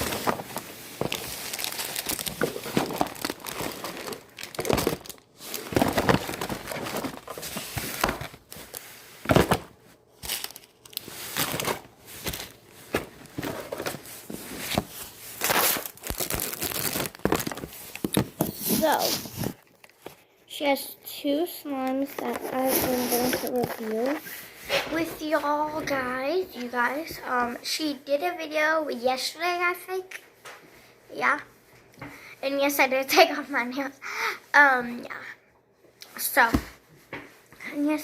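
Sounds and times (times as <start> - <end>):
slime crinkling and crackling: 0.0 - 8.8, 14.7 - 20.0.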